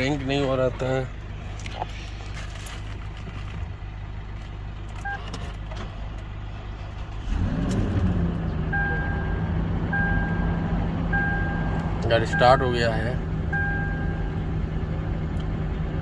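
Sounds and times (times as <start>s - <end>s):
engine starting and idling: 6.6s - 8.9s
car beeping chime: 8.7s - 14.3s.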